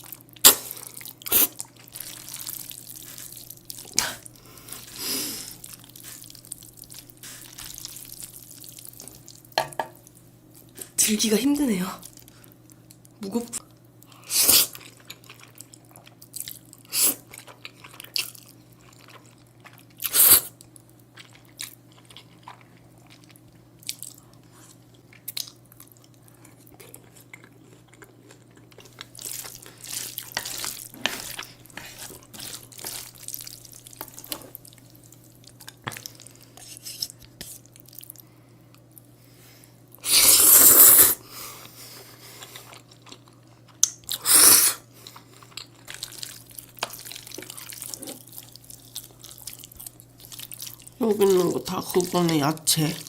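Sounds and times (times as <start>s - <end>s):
wet chewing and mouth clicks: 14.0s - 39.1s, 45.0s - 52.0s
noodle slurping: 40.0s - 41.2s.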